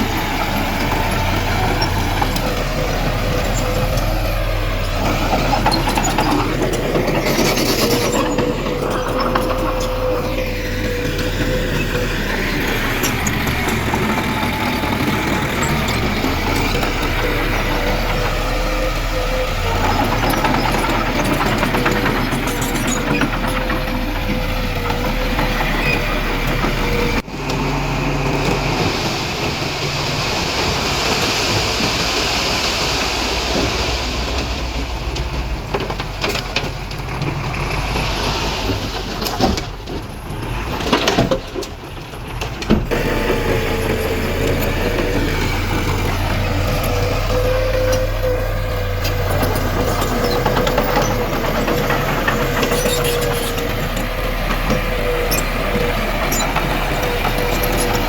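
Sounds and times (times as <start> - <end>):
heavy diesel machinery engine drone: 0.0 - 58.0.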